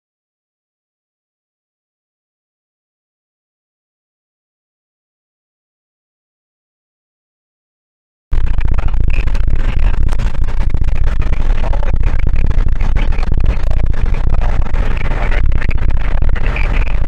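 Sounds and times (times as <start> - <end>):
radio static hiss and crackle: 8.3 - 17.0.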